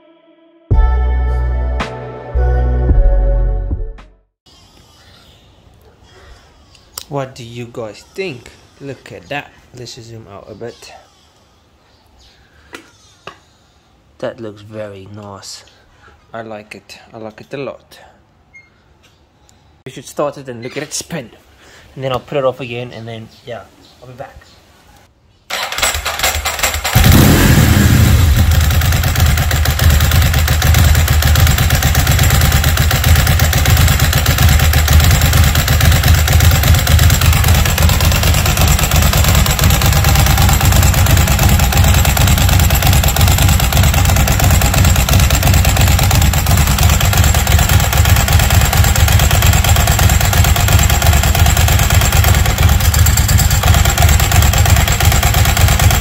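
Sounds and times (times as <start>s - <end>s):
motorcycle starter cranking: 25.5s - 56.0s
motorcycle engine idling: 25.6s - 56.0s.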